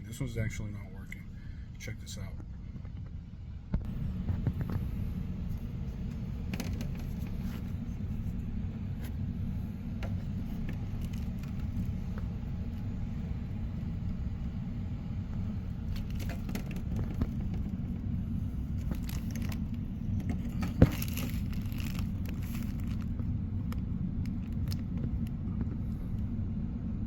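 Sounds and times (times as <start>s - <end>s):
steady low rumble: 0.0s - 27.0s
handling clicks and rustles: 4.3s - 9.2s, 9.9s - 13.0s, 15.4s - 26.3s.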